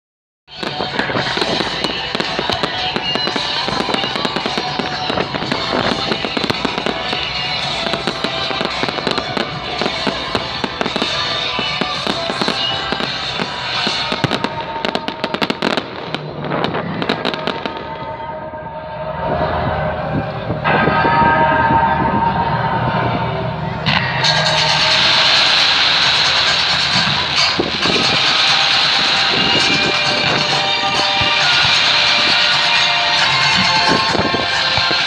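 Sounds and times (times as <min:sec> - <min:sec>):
fireworks bangs and crackles: 0:00.5 - 0:18.4, 0:23.9 - 0:35.0
music playing: 0:00.5 - 0:35.0.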